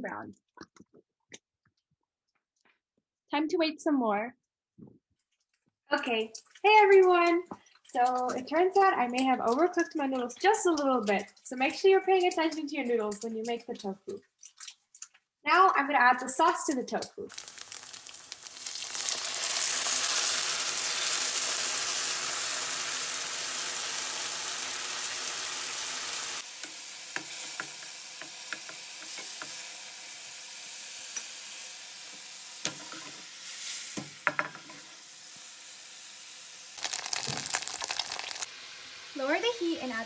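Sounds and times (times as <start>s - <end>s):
sauce sizzling in hot oil: 17.3s - 40.0s.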